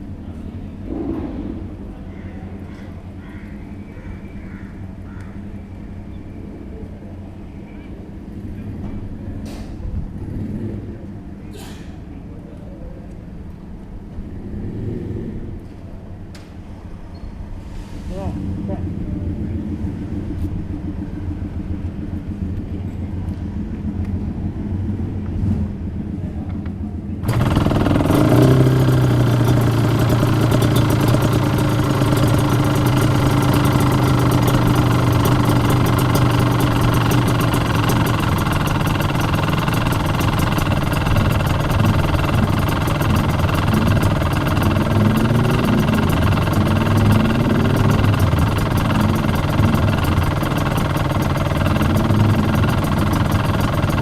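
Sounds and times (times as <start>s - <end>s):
two-stroke motorcycle engine running: 18.4s - 54.0s.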